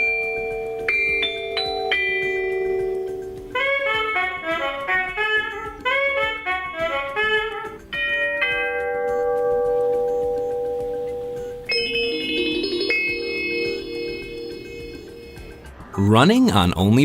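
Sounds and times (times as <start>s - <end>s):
door chime melody: 0.0s - 3.8s, 7.9s - 15.7s.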